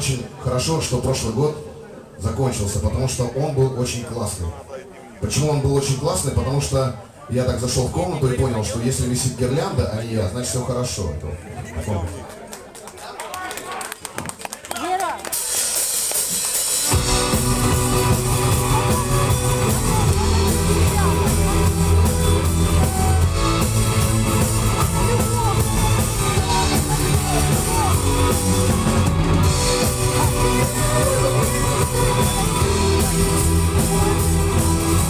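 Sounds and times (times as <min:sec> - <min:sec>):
live rock band playing: 0:15.3 - 0:35.0.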